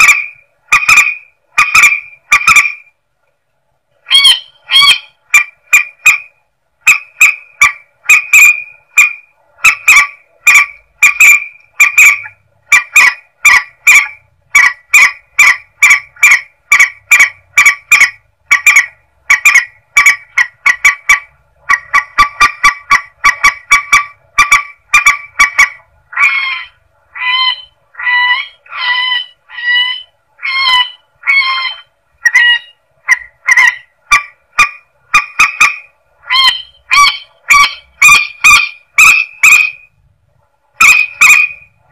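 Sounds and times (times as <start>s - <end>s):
water bird honking calls: 0.0s - 2.9s, 4.1s - 39.9s, 40.8s - 41.7s.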